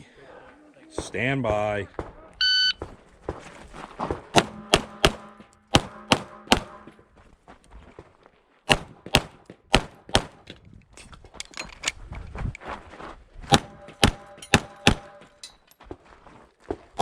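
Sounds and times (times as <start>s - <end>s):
pistol shots: 4.3s - 6.9s, 8.7s - 10.5s, 13.5s - 15.3s.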